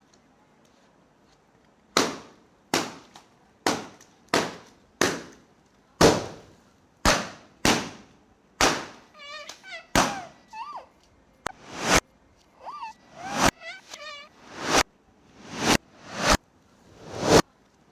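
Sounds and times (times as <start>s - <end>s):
wavering squeaky sound: 12.9s - 14.8s.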